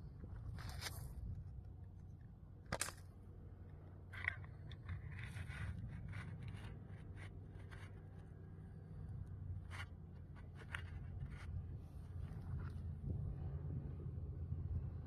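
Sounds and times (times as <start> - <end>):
wind rumble on microphone: 0.0 - 2.7, 4.4 - 15.0
scraping and crunching: 0.3 - 1.4.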